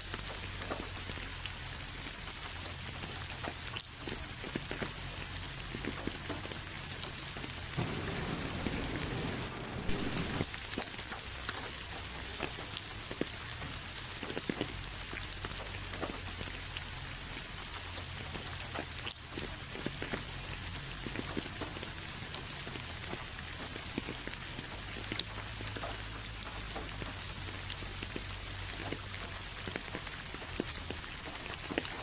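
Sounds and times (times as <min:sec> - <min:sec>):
raindrops ticking close by: 0:00.0 - 0:32.0
steady rain: 0:00.0 - 0:32.0
low rush: 0:07.8 - 0:10.5.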